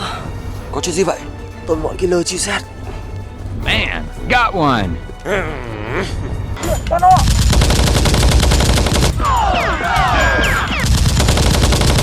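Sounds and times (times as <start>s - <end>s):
automatic gunfire: 7.2s - 9.1s, 10.8s - 12.0s.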